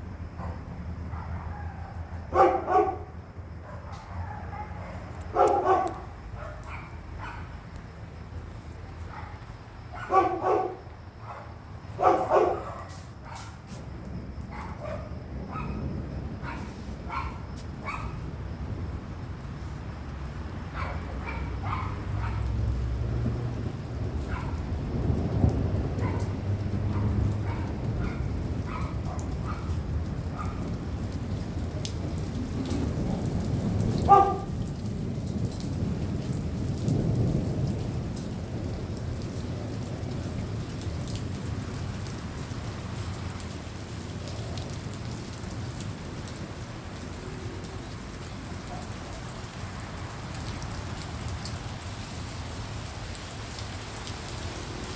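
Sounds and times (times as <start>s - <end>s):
rain falling: 0.0s - 54.9s
thunder rumbling: 0.0s - 54.9s
dog barking: 0.4s - 7.6s, 9.0s - 13.8s, 14.5s - 15.8s, 16.4s - 18.2s, 20.7s - 22.5s, 24.2s - 24.7s, 26.0s - 30.7s, 34.0s - 34.6s, 48.7s - 49.2s
steady low rumble: 12.6s - 33.9s.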